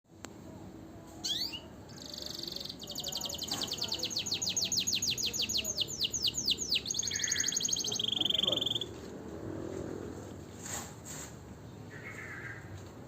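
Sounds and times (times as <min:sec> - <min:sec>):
songbird singing: 0:01.0 - 0:09.2.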